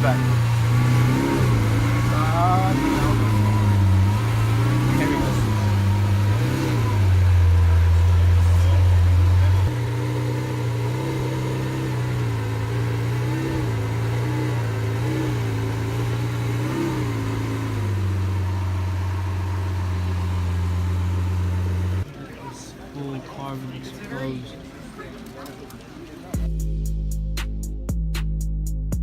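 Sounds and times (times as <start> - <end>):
car engine idling and revving: 0.0 - 22.2.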